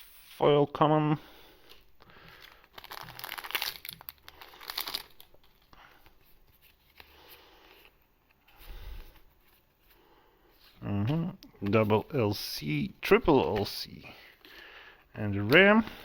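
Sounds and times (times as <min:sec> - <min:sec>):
wrapper tearing and crinkling: 0:02.3 - 0:05.7.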